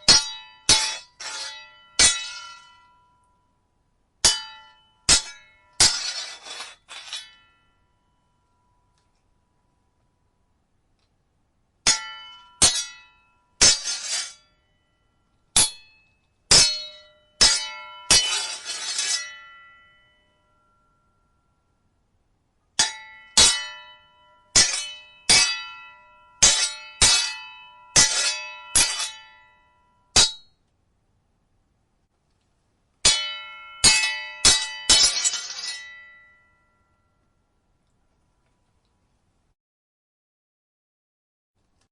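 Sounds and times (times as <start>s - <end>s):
sword blades clashing: 0.0s - 3.0s, 4.2s - 7.6s, 11.9s - 14.5s, 15.6s - 19.9s, 22.8s - 29.6s, 30.2s - 30.5s, 33.0s - 36.5s
blade grinding along blade: 0.1s - 2.7s, 5.2s - 7.4s, 13.6s - 14.4s, 17.5s - 19.3s.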